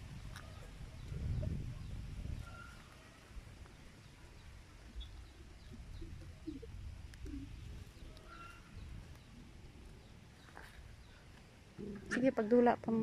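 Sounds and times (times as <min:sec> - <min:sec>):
wind rumbling on microphone: 0:00.0 - 0:12.4
faint short bird calls: 0:05.0 - 0:09.0.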